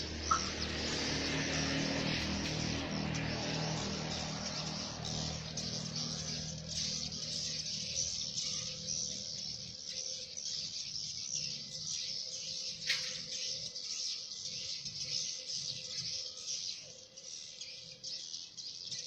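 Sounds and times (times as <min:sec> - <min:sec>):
swiftlets twittering: 0:00.3 - 0:01.4.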